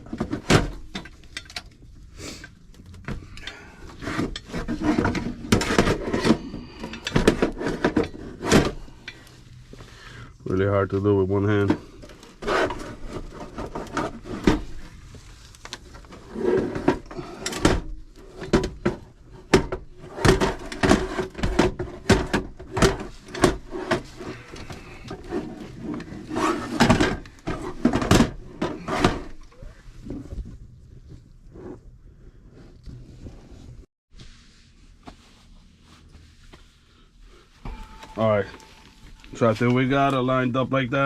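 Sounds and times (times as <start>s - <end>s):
metal casing knocking and scraping: 3.0s - 9.3s, 37.6s - 41.0s.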